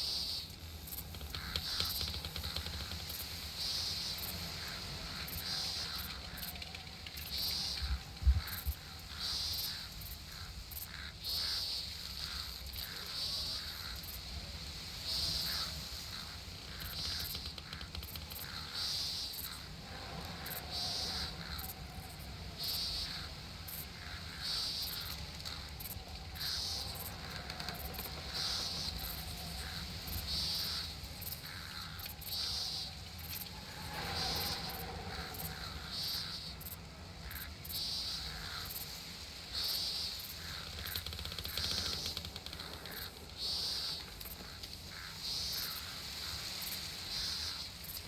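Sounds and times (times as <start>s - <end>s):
faint ticking: 15.1s - 38.8s.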